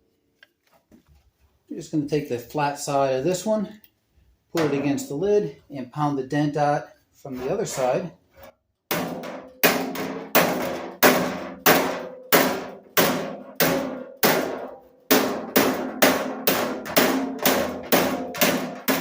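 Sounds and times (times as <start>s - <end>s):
hammer striking steel lid: 4.6s - 5.1s, 8.9s - 19.0s.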